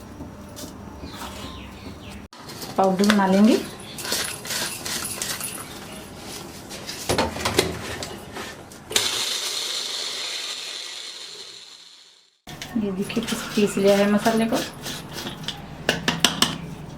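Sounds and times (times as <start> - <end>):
mixer-grinder grinding spices: 8.4 - 16.9.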